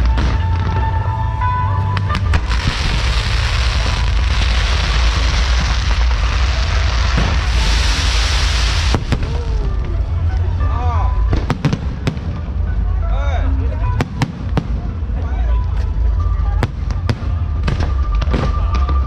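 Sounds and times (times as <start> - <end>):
heavy low rumble: 0.0 - 19.0
music: 0.0 - 19.0
fireworks cracks: 1.8 - 10.6
fireworks crackling hiss: 2.0 - 10.0.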